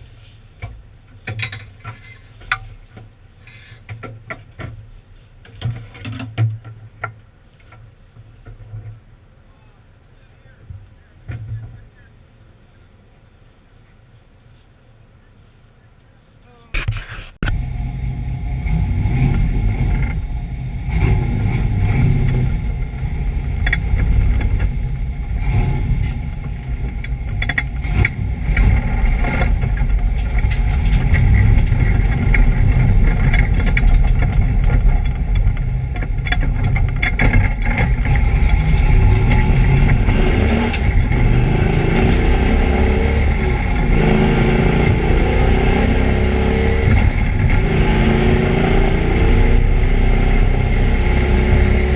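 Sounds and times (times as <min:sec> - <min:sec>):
car engine revving: 0:16.8 - 0:51.9
engine misfire cracks: 0:16.8 - 0:51.9.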